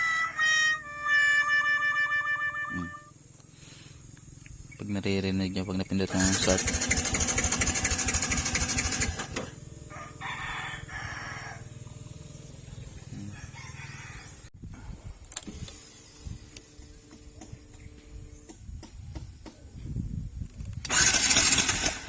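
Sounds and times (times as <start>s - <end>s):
rooster crowing: 9.8s - 11.9s, 13.2s - 14.5s.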